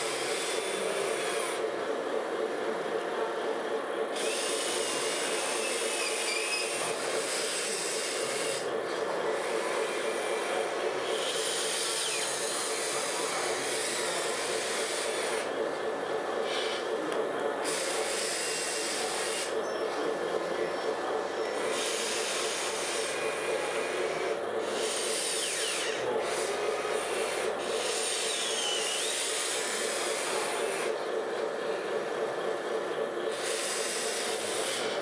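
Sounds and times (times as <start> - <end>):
small electric motors whirring: 0.0 - 1.6, 4.1 - 8.7, 9.3 - 15.5, 16.4 - 16.9, 17.6 - 19.6, 21.5 - 31.0, 33.3 - 35.0.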